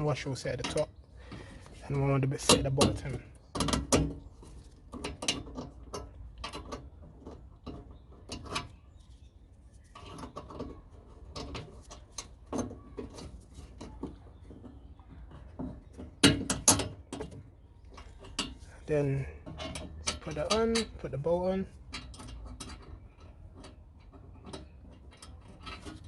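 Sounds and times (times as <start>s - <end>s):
clicks and knocks of engine parts: 0.0s - 26.0s.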